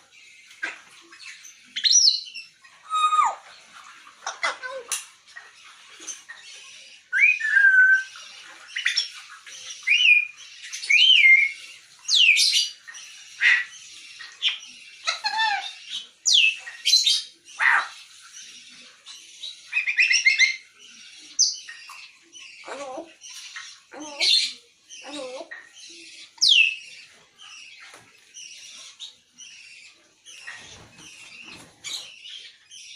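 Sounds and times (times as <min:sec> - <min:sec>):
parrot whistling and squawking: 0:02.8 - 0:03.4, 0:07.1 - 0:08.2, 0:14.5 - 0:16.6.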